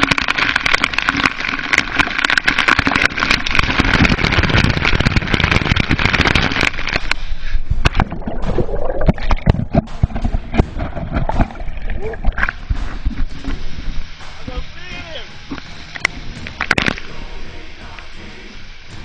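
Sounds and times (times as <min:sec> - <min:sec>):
low rumble: 0:03.0 - 0:18.8
waterfall rushing: 0:11.2 - 0:19.0.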